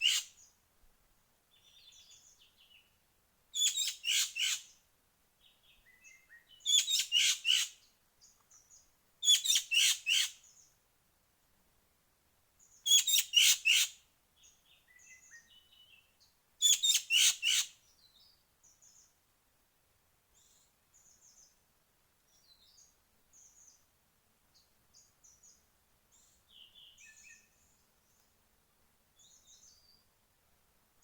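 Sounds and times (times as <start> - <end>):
harsh rasping bird calls: 0.0 - 0.4, 16.6 - 17.7
faint bird chirping: 1.5 - 4.8, 5.4 - 10.8, 14.4 - 19.2, 20.3 - 28.4, 29.1 - 30.2.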